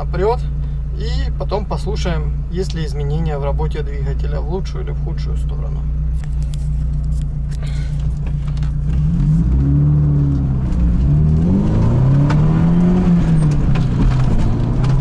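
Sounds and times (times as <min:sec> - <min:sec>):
car engine accelerating hard: 0:05.4 - 0:15.0.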